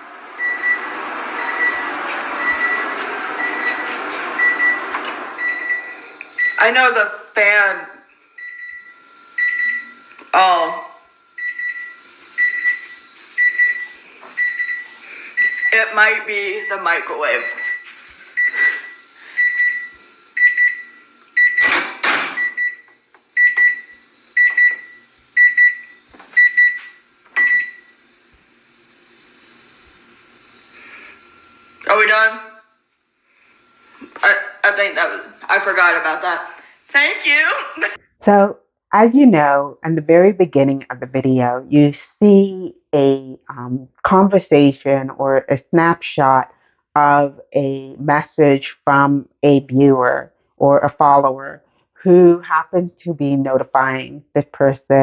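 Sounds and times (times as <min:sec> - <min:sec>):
short high-pitched beeps: 0:00.4 - 0:06.6, 0:08.4 - 0:10.0, 0:11.4 - 0:15.9, 0:16.6 - 0:21.7, 0:22.4 - 0:27.9.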